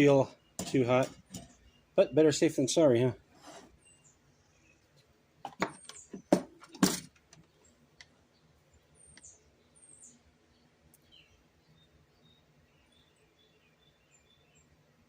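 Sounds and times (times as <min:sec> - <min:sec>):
faint bird chirps: 0:00.0 - 0:02.4, 0:07.4 - 0:14.8
object handled and set down: 0:00.6 - 0:01.6, 0:05.4 - 0:07.3.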